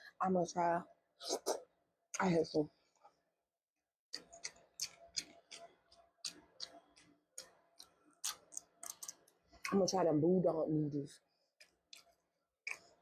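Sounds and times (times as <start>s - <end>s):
wet mouth clicks and smacks: 4.2s - 9.8s, 11.6s - 13.0s.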